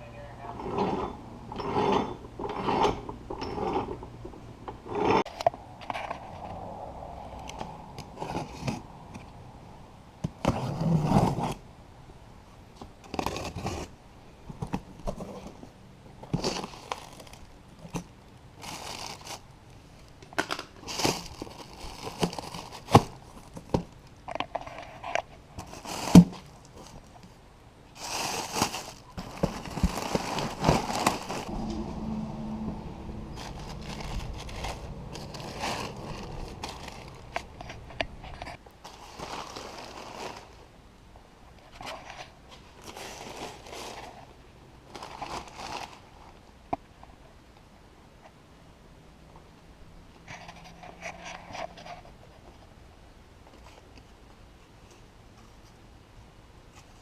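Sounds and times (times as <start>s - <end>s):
tools knocking and scraping metal: 0.5s - 5.4s.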